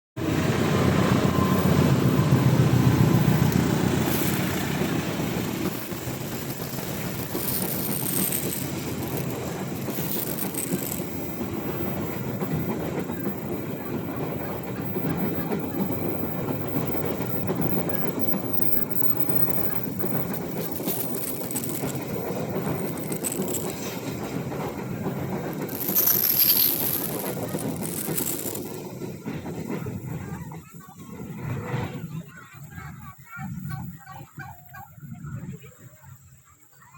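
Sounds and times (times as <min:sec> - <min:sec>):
train wagons rumbling over rails: 0:00.2 - 0:33.0
high-pitched wheel screech: 0:00.8 - 0:11.4.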